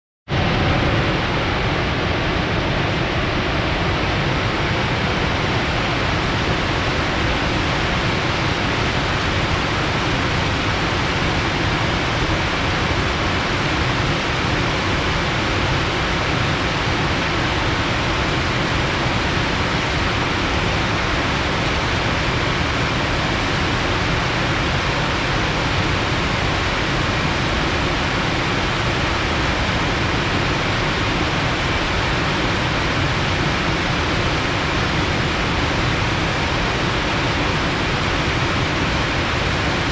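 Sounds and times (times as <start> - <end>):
rushing water with low rumble: 0.3 - 39.9.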